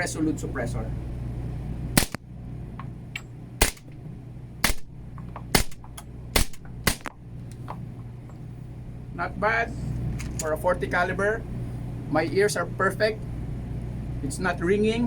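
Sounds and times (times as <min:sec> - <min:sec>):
suppressed gunshots indoors: 0:02.0 - 0:02.3, 0:03.6 - 0:04.0, 0:04.6 - 0:07.2.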